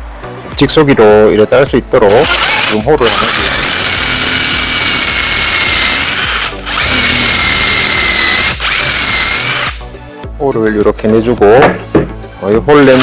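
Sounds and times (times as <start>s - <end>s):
power drill boring through wood: 2.2s - 9.8s, 12.8s - 13.0s.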